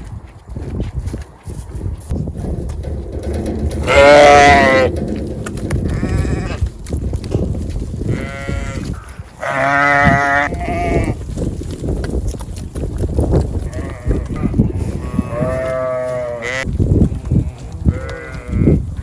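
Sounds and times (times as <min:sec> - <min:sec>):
sheep bleating: 0:03.8 - 0:04.9, 0:08.1 - 0:11.2, 0:13.7 - 0:16.6, 0:17.4 - 0:18.8.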